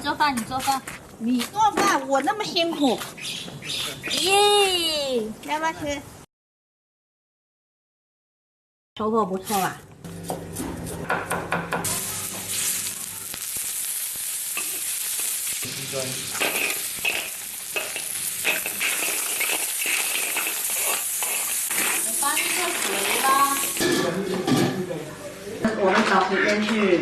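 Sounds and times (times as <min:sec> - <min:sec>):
food sizzling in a pan: 0:11.8 - 0:24.5.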